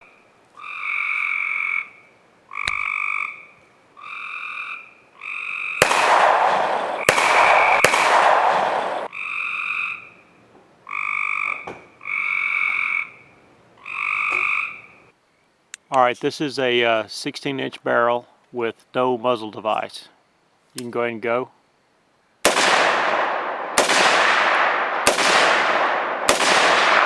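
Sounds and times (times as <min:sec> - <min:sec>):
frog calling: 0:00.0 - 0:05.9, 0:08.8 - 0:15.2
loud rushing noise: 0:06.0 - 0:09.1.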